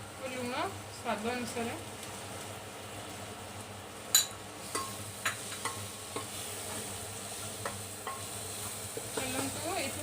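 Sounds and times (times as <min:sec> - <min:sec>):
spices sizzling in oil: 0:00.0 - 0:10.0
spoon tapping against pot: 0:04.1 - 0:06.4, 0:07.6 - 0:08.3.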